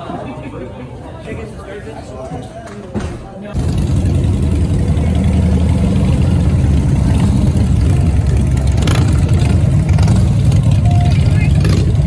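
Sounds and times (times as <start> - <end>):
motorcycle engine rumbling: 3.6 - 12.0.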